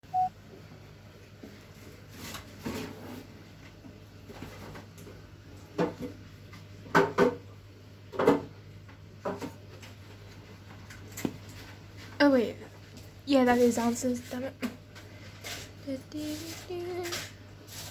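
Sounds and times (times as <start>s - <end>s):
low steady hum: 0.0s - 2.4s
kitchen items knocking and clattering: 6.9s - 7.5s.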